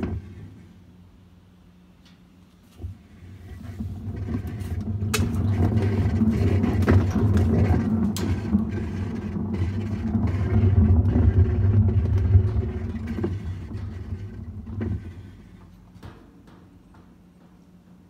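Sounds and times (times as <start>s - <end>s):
washer drum spinning: 2.8s - 15.6s.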